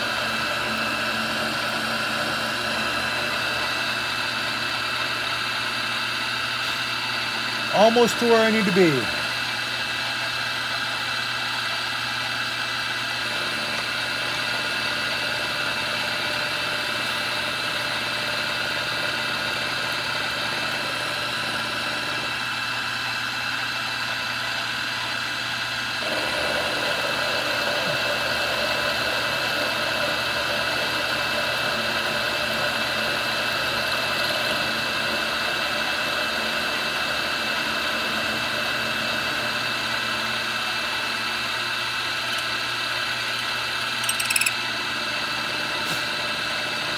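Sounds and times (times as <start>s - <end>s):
milling machine cutting whine: 0.0s - 46.9s.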